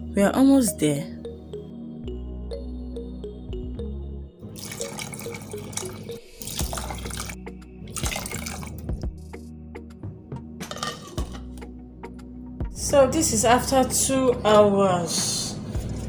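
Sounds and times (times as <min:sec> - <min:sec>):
background music: 0:00.0 - 0:16.0
water splashing: 0:04.6 - 0:08.9.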